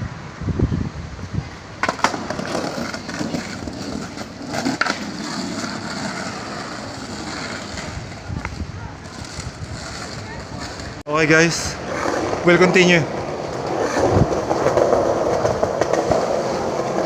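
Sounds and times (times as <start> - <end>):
skateboard wheels rolling on paving: 0.0 - 17.0
skateboard clacks: 1.8 - 11.0, 11.9 - 17.0.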